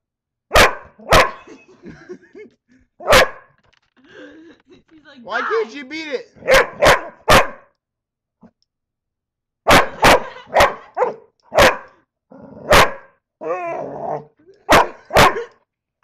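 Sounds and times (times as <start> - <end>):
dog barking: 0.5 - 1.5, 3.0 - 3.5, 6.4 - 7.7, 9.7 - 12.0, 12.6 - 13.2, 14.6 - 15.5.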